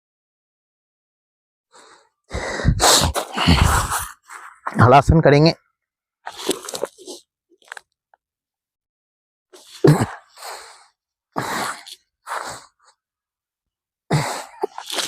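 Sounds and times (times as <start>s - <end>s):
forceful puffs of breath: 1.8s - 4.2s.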